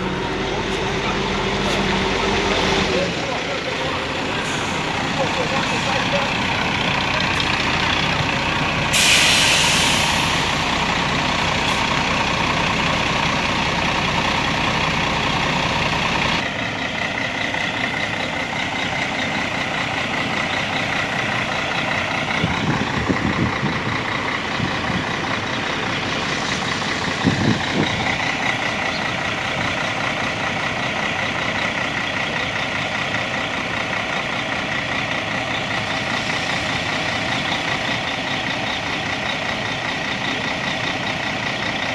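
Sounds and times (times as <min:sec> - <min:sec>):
diesel bus engine running: 0:00.0 - 0:41.9
air brake hiss: 0:08.9 - 0:10.7.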